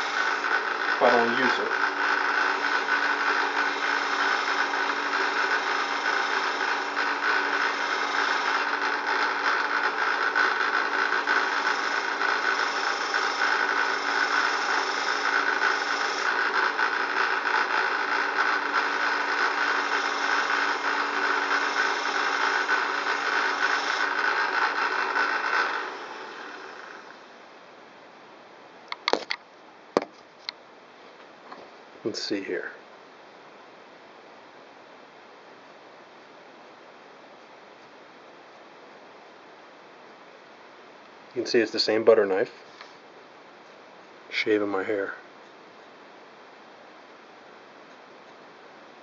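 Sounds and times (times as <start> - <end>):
belt sander running: 0.0 - 27.4.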